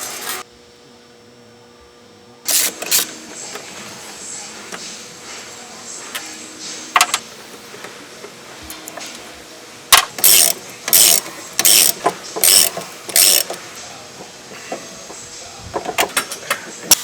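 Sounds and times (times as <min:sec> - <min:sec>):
ratchet wrench clicking: 0:02.5 - 0:03.1, 0:09.9 - 0:13.6.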